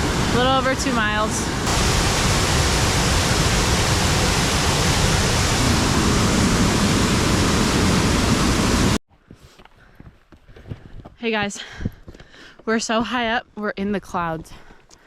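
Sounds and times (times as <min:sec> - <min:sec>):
waterfall rushing: 0:00.0 - 0:09.0.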